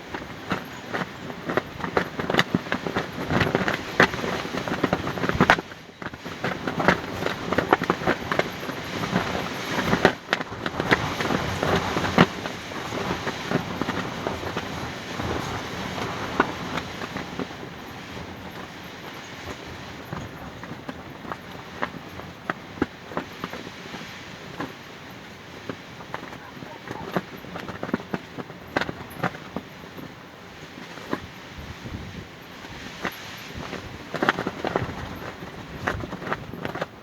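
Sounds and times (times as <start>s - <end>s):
fabric flapping in wind: 0.0s - 37.0s
wind rushing rumble: 31.3s - 36.8s.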